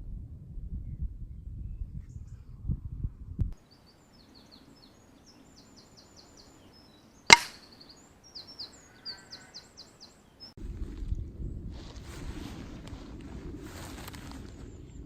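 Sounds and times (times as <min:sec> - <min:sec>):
small bird chirping: 0:03.6 - 0:10.6
air rifle shot: 0:07.3 - 0:07.7.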